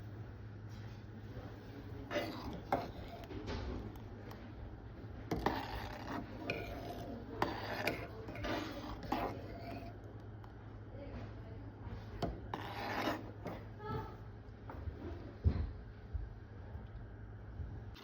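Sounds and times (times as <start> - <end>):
low steady hum: 0.0 - 18.0
kitchen utensils scraping and clicking: 2.0 - 4.5, 5.2 - 10.2, 12.0 - 14.0.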